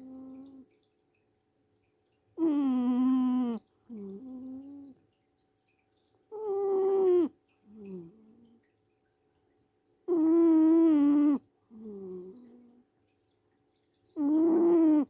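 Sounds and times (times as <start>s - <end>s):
cat snoring: 2.4s - 4.9s, 6.3s - 8.3s, 10.1s - 12.8s, 14.2s - 15.0s.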